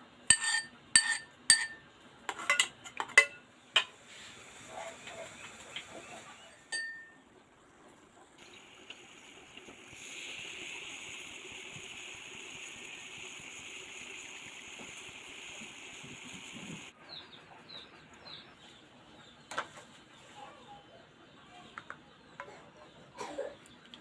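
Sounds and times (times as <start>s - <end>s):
tea boiling in a pan: 2.4s - 17.0s.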